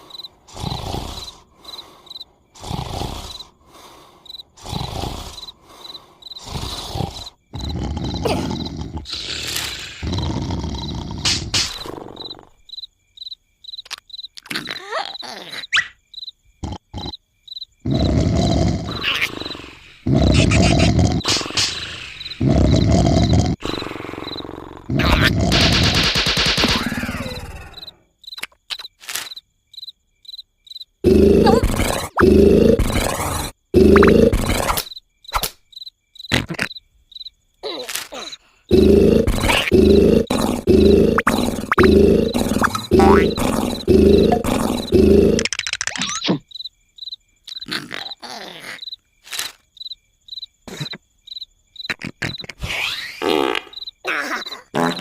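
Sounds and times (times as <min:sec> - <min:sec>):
loud rough snoring: 0:00.0 - 0:02.0, 0:02.6 - 0:12.5, 0:17.8 - 0:26.1, 0:31.0 - 0:34.8, 0:38.7 - 0:45.4
crickets chirping: 0:00.0 - 0:55.0.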